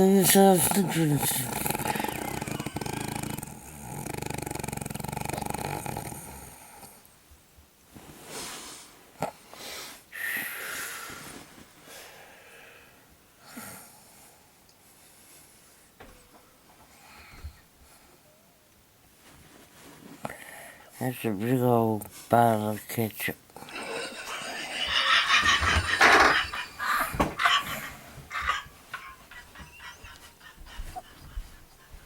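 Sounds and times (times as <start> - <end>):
woman snoring: 0.3 - 7.0.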